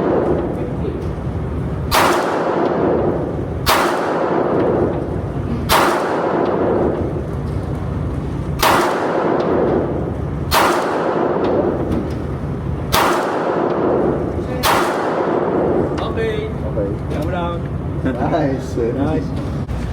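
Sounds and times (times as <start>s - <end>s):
gunshots with echo: 0.0s - 0.7s, 1.9s - 7.3s, 8.6s - 12.1s, 12.9s - 16.0s.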